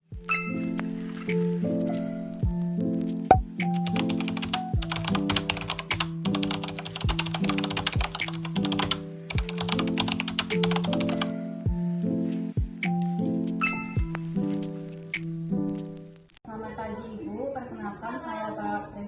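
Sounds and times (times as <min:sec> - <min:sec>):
background music sustained notes: 0:00.0 - 0:16.1
rapid typing clicks: 0:03.8 - 0:11.2.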